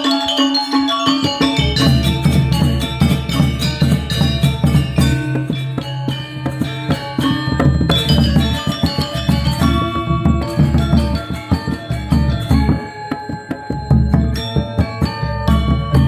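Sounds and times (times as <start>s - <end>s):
pitched percussion and drums music: 0.0s - 16.0s.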